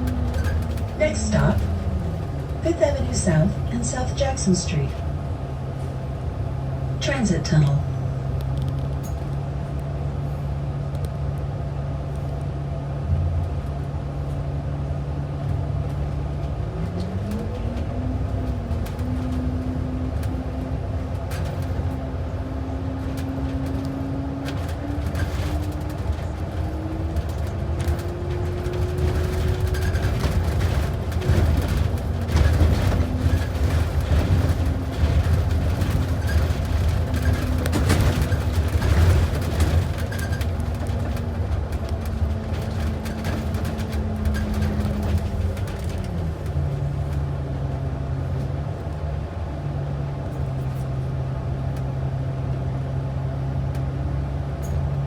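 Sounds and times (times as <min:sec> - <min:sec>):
bus engine hum: 0:00.0 - 0:55.0
road noise: 0:00.0 - 0:55.0
rattling: 0:20.3 - 0:46.8.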